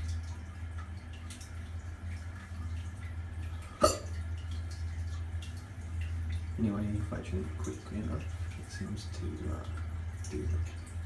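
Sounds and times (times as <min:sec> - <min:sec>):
steady low hum: 0:00.0 - 0:11.0
man hiccuping: 0:03.8 - 0:04.1.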